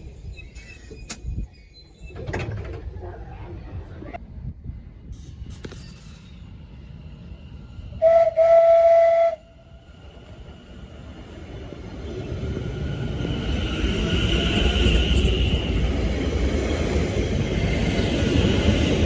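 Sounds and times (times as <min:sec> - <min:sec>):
train running rumble: 0:02.0 - 0:19.0
train horn blast: 0:08.0 - 0:09.6.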